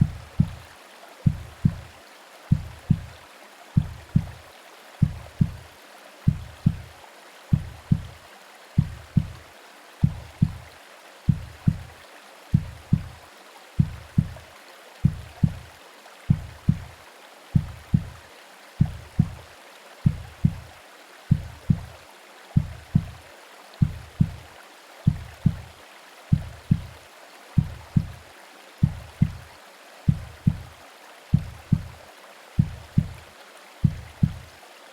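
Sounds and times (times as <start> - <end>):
muffled heartbeat thumps: 0.0 - 3.2, 3.8 - 4.4, 5.0 - 5.7, 6.3 - 6.9, 7.5 - 8.2, 8.8 - 9.4, 10.0 - 10.7, 11.3 - 13.2, 13.8 - 14.4, 15.0 - 15.7, 16.3 - 17.0, 17.6 - 18.2, 18.8 - 22.0, 22.6 - 23.2, 23.8 - 24.5, 25.1 - 27.0, 27.6 - 28.2, 28.8 - 29.5, 30.1 - 32.0, 32.6 - 33.2, 33.8 - 34.6
rain: 0.0 - 34.9
white noise hiss: 0.0 - 34.9.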